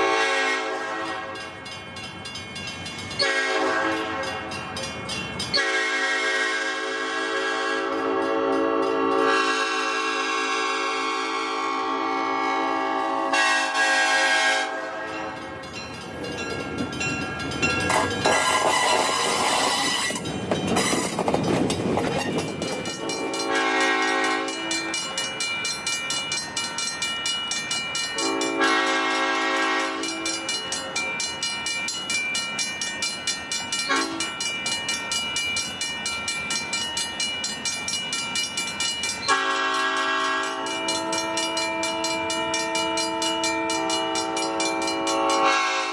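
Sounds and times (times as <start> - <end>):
locomotive horn blasts: 0.0 - 1.5, 3.2 - 4.5, 5.6 - 15.4, 23.0 - 25.0, 28.2 - 30.6, 33.9 - 34.3, 39.3 - 45.9
train rushing past: 0.0 - 45.9
wheels clacking over rail joints: 15.0 - 45.9.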